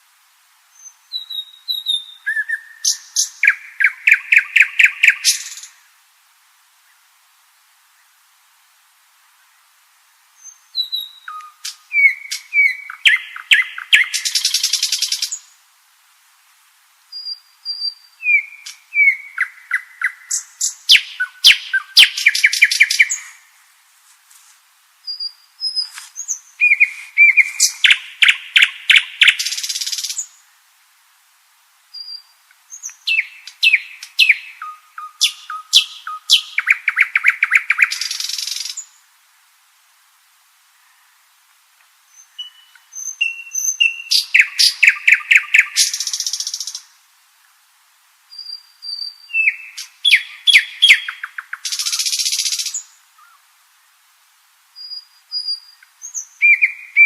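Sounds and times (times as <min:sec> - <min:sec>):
nightingale singing: 0:00.7 - 0:06.0, 0:09.3 - 0:15.6, 0:17.0 - 0:23.6, 0:25.0 - 0:30.6, 0:31.9 - 0:39.0, 0:42.0 - 0:47.0, 0:48.3 - 0:54.0, 0:54.7 - 0:57.0.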